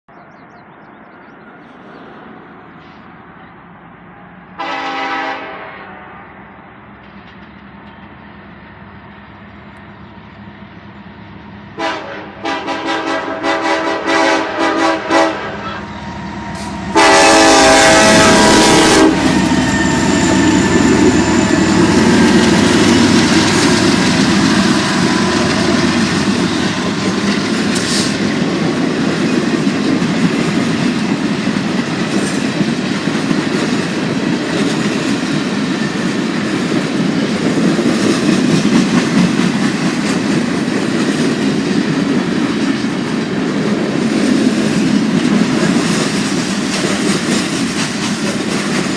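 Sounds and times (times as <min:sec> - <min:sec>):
freight train rumbling past: 0:00.2 - 0:48.9
locomotive horn blast: 0:04.6 - 0:06.2, 0:11.8 - 0:22.1.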